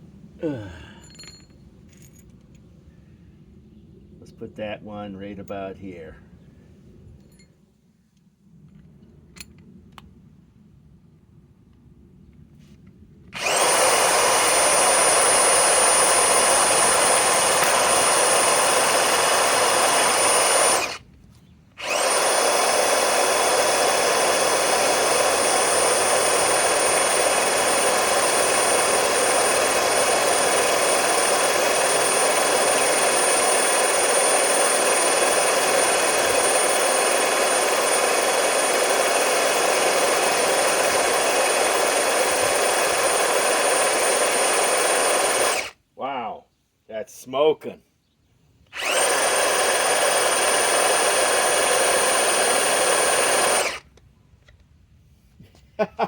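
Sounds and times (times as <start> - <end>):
impact wrench driving screw into wood: 13.4 - 21.0, 21.8 - 45.7, 48.7 - 54.0.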